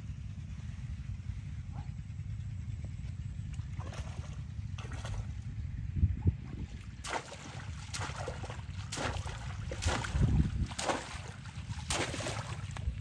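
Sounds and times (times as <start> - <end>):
low rumble: 0.0 - 13.0
water splashing and sloshing: 3.4 - 5.6, 6.2 - 13.0.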